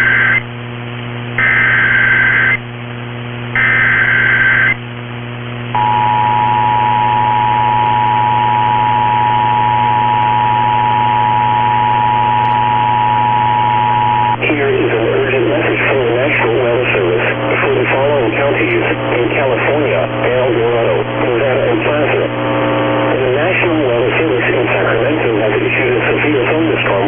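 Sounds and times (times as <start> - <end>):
low hum and hiss: 0.0 - 27.0
dual-tone attention signal: 5.8 - 14.4.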